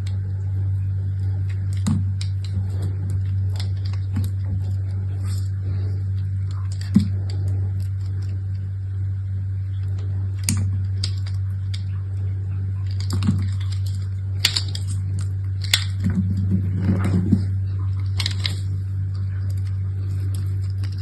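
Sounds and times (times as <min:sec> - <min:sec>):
low hum: 0:00.0 - 0:21.0
packaging crinkling: 0:12.8 - 0:21.0.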